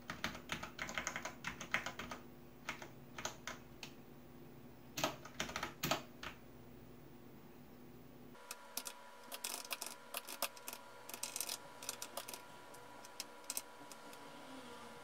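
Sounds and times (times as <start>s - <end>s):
computer keyboard typing: 0.0s - 4.0s, 5.0s - 6.4s, 8.4s - 14.1s
faint hum: 0.0s - 15.0s.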